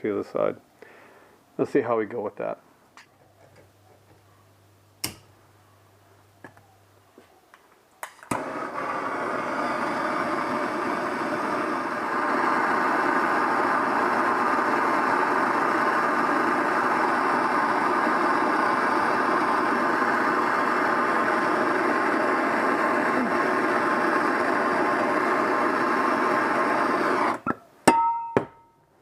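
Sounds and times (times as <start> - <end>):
heating tool rushing noise: 8.3 - 27.4.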